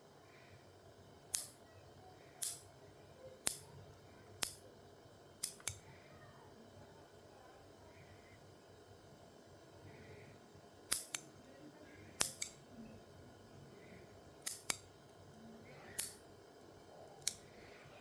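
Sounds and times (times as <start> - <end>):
nail clippers clicking: 1.4 - 1.6, 2.4 - 2.7, 3.5 - 3.7, 4.4 - 4.6, 5.4 - 5.8, 10.9 - 11.3, 12.2 - 12.6, 14.4 - 14.9, 16.0 - 16.2, 17.2 - 17.5.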